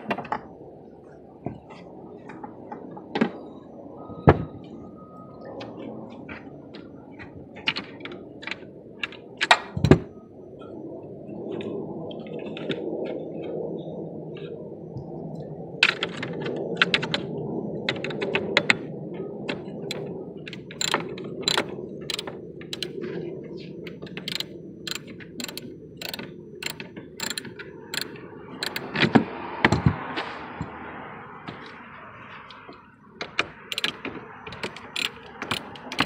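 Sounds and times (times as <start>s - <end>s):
ratchet wrench clicking: 20.6s - 22.9s, 23.9s - 28.9s, 33.7s - 36.0s.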